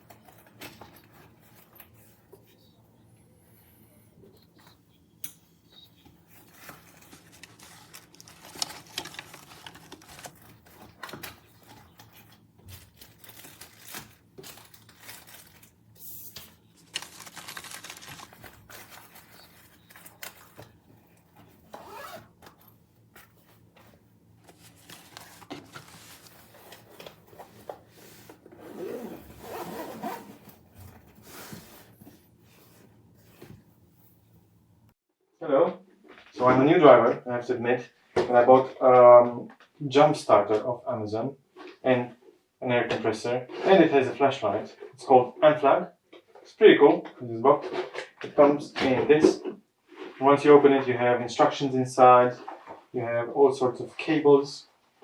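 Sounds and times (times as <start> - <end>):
packaging rustling and scraping: 5.8 - 34.3.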